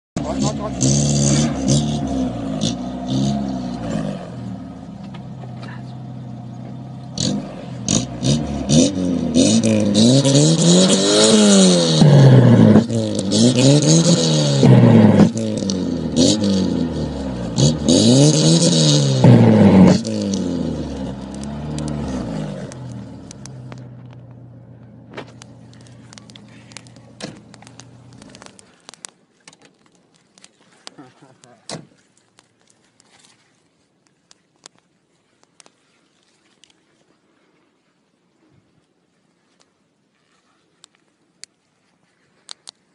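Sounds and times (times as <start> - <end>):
car engine revving: 0.2 - 28.4
sharp clicks: 25.2 - 30.5.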